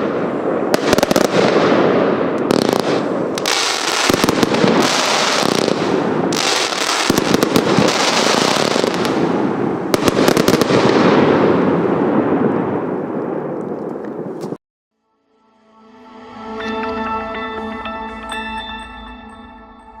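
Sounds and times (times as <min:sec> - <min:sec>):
fireworks barrage crackling: 0:00.0 - 0:14.6.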